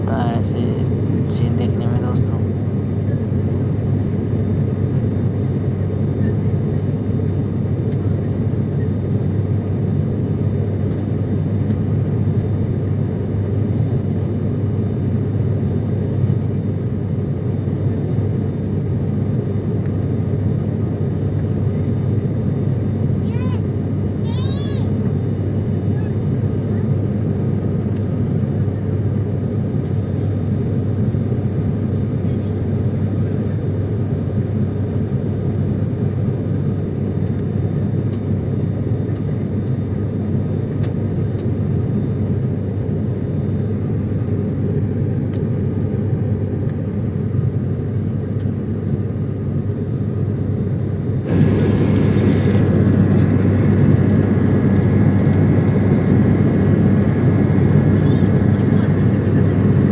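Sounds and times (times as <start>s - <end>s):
airliner engines droning: 0.0s - 59.9s
rushing air: 51.2s - 57.7s.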